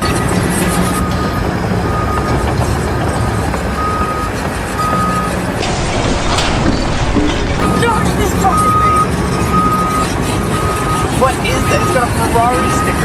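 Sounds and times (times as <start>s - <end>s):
heavy vehicle rumbling: 5.3s - 11.0s
reversing alarm beeps: 8.5s - 13.0s.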